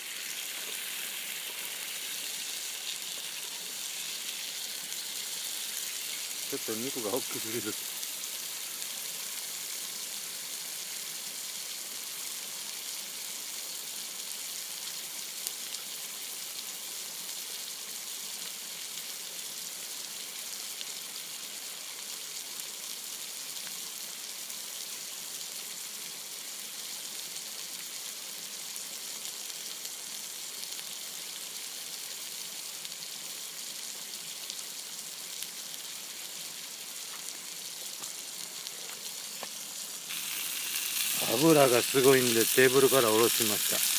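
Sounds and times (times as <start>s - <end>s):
meat sizzling in oil: 0.0s - 43.9s
oil popping: 40.1s - 43.9s.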